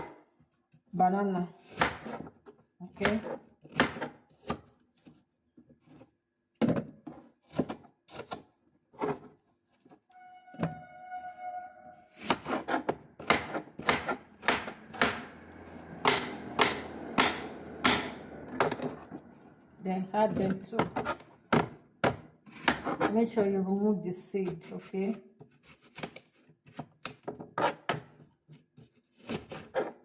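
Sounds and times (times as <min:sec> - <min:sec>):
short held tone: 0:10.1 - 0:12.8.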